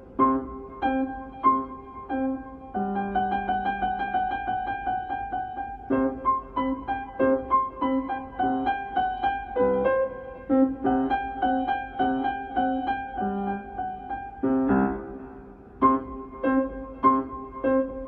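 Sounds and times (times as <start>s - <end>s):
light piano melody: 0.0s - 18.0s.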